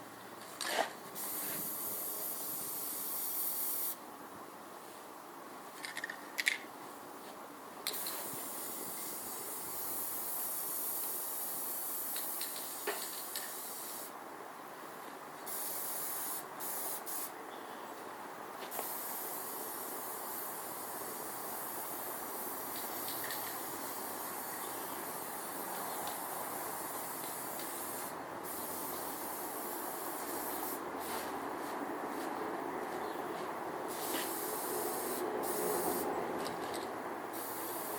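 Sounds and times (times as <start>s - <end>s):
hissing spray: 1.2s - 4.0s, 15.5s - 17.3s, 18.7s - 31.3s, 33.9s - 36.1s, 37.3s - 37.9s.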